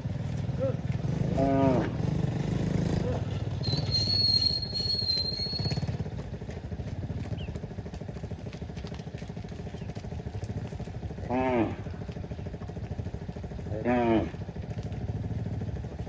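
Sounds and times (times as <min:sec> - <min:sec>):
small engine rumbling: 0:00.0 - 0:16.0
cow mooing: 0:01.2 - 0:02.0, 0:11.3 - 0:11.9, 0:13.8 - 0:14.4.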